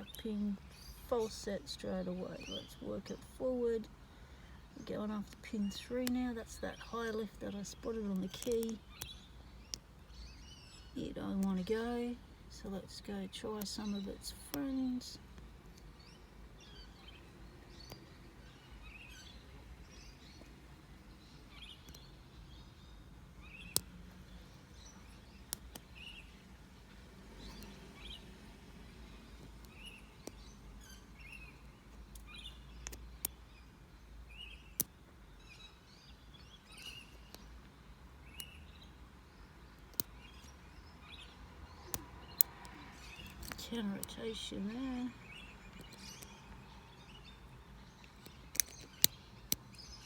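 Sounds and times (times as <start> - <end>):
small birds chirping: 0.0 - 50.0
lock picks clicking on padlock: 48.0 - 49.9.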